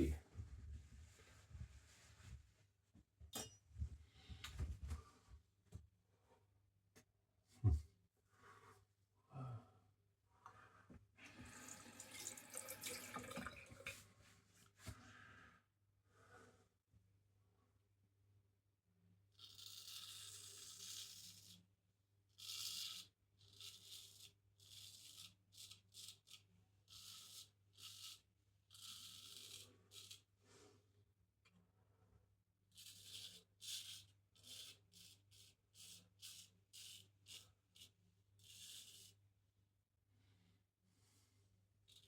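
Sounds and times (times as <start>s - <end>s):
tap water running into sink: 11.3s - 14.0s.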